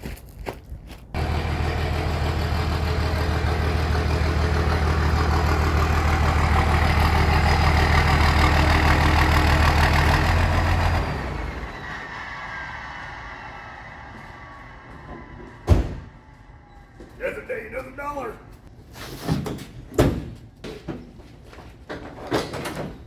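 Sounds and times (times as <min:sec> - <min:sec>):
vehicle engine running: 0:01.2 - 0:11.8.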